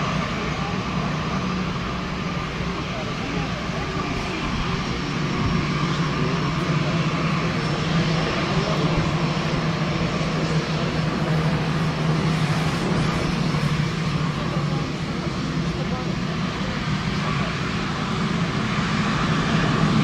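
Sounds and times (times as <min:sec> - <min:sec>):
jet engines running: 0:00.0 - 0:20.0.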